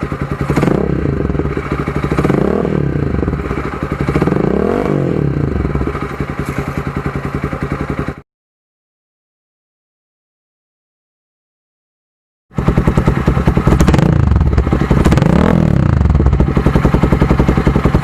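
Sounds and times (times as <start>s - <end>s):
motorcycle engine revving: 0.0s - 8.2s, 12.5s - 18.0s.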